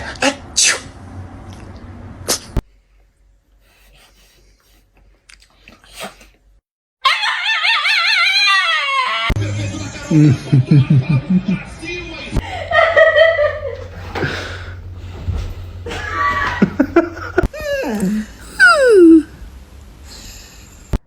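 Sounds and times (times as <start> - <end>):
dog howling: 7.0 - 9.4, 17.6 - 19.3.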